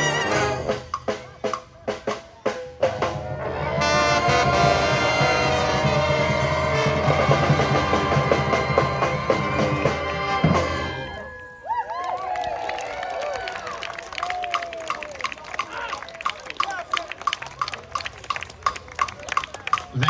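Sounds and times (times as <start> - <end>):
brass and drum band playing: 0.0 - 11.3
cymbals: 2.6 - 11.4.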